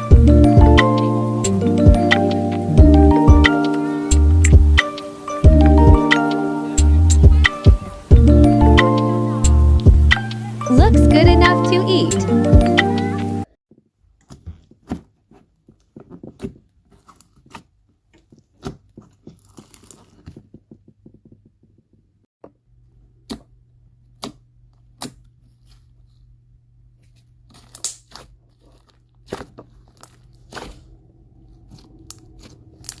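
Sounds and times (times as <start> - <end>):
slime clicking and popping: 27.5 - 30.8.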